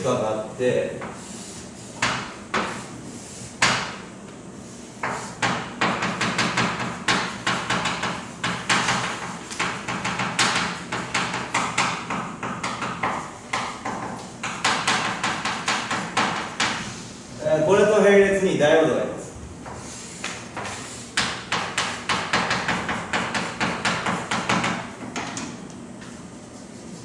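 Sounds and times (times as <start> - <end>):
writing taps and strokes on board: 2.0 - 2.8, 5.0 - 16.8, 19.6 - 25.6.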